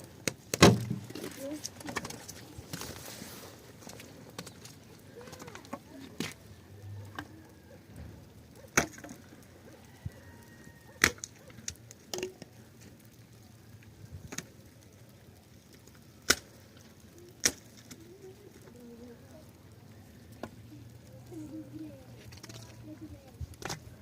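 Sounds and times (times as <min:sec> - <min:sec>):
axe chopping wood: 0:00.5 - 0:01.0.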